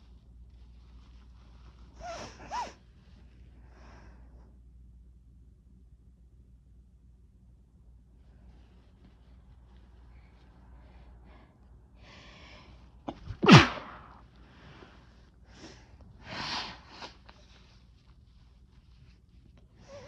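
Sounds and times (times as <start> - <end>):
person breathing: 10.8 - 12.9, 19.8 - 20.0
person sneezing: 13.2 - 14.1.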